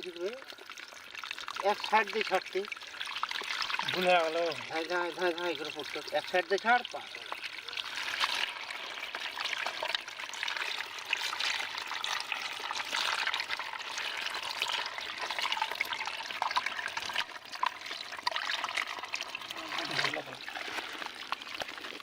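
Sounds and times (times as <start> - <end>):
small splashes: 0.0 - 22.0
water pouring and trickling: 0.0 - 22.0.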